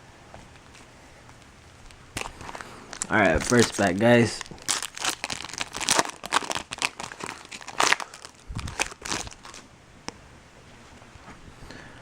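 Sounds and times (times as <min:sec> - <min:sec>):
foil wrapper crinkling and tearing: 0:01.6 - 0:09.6.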